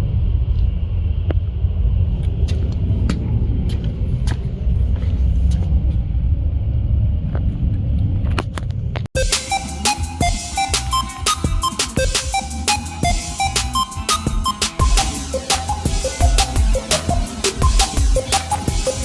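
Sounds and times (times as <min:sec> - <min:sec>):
vehicle rumbling: 0:00.0 - 0:09.1.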